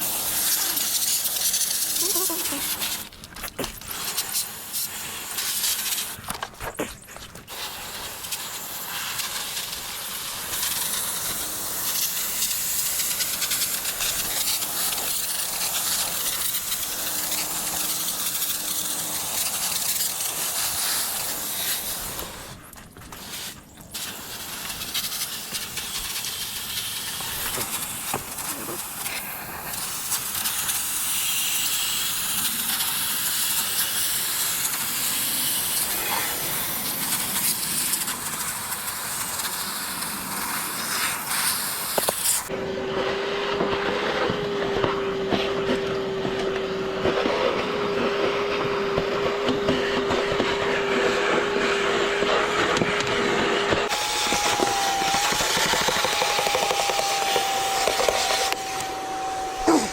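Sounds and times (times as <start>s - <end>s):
water spraying onto metal coil: 0.0s - 6.2s, 7.5s - 42.5s.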